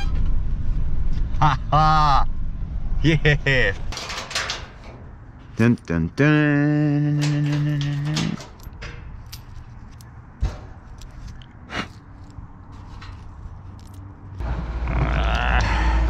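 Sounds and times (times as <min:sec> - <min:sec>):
keys jangling: 0:07.1 - 0:14.4.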